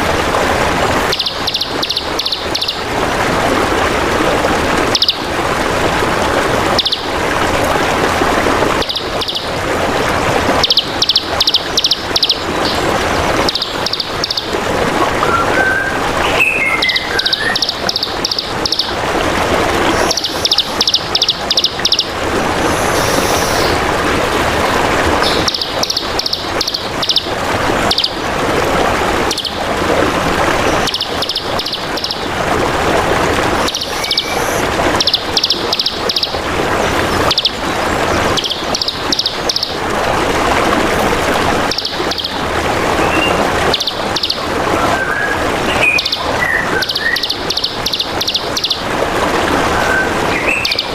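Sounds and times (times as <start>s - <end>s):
trickling water: 0.0s - 50.9s
songbird trilling: 1.1s - 2.8s, 4.9s - 5.2s, 6.8s - 7.1s, 8.8s - 9.5s, 10.6s - 12.8s, 13.4s - 14.5s, 15.2s - 18.9s, 19.9s - 22.1s, 22.7s - 23.7s, 25.2s - 27.3s, 29.3s - 29.6s, 30.8s - 32.2s, 33.7s - 36.3s, 37.3s - 37.6s, 38.4s - 39.8s, 41.7s - 42.4s, 43.0s - 44.4s, 45.7s - 48.8s, 50.3s - 50.9s.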